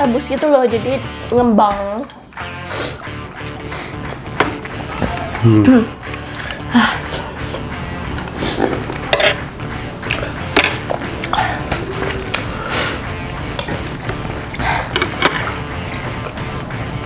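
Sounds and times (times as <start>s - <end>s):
eating noises: 1.7s - 17.0s
cutlery clinking against bowl: 6.1s - 17.0s.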